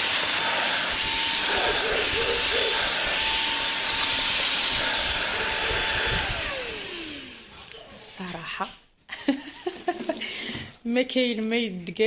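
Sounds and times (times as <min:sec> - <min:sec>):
suction air rushing: 0:00.0 - 0:07.5
vacuum cleaner motor whine: 0:00.0 - 0:08.2.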